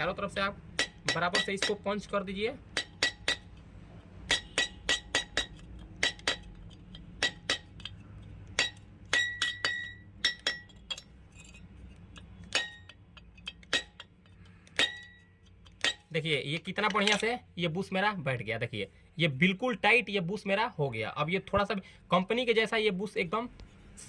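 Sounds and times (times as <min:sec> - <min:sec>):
hammer tapping on screwdriver: 0:00.8 - 0:01.9, 0:02.7 - 0:03.5, 0:04.3 - 0:11.1.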